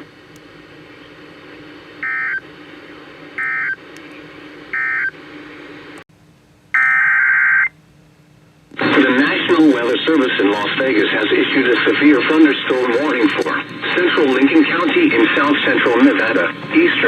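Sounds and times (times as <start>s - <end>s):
radio hiss: 0.0s - 6.0s, 8.7s - 17.0s.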